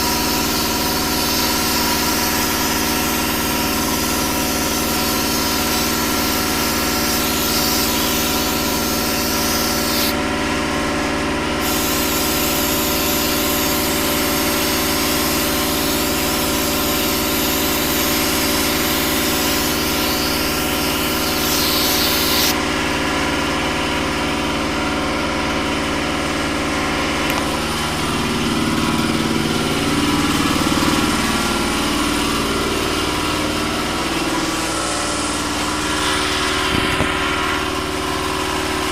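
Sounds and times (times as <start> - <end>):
compressed air hissing from blow gun: 0.0 - 10.2, 11.6 - 22.6, 33.8 - 38.0
motor humming: 0.0 - 23.1, 27.0 - 38.9.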